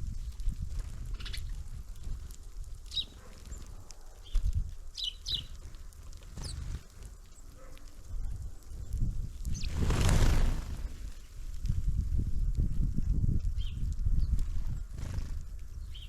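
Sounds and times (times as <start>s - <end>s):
small birds chirping: 1.0s - 2.1s, 2.8s - 11.4s, 13.6s - 16.0s.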